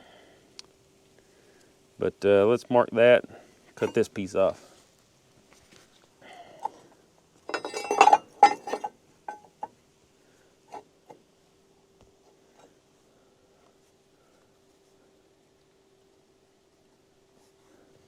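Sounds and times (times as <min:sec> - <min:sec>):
faint steady hum: 0:00.0 - 0:18.0
metal tools clinking: 0:03.8 - 0:04.1, 0:07.5 - 0:09.7.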